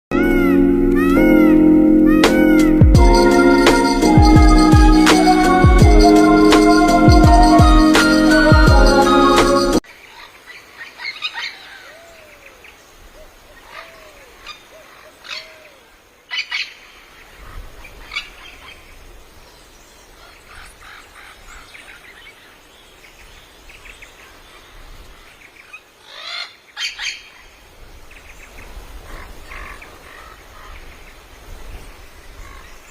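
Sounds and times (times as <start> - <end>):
birds chirping: 0.1 - 32.9
harsh bird calls: 0.2 - 19.0.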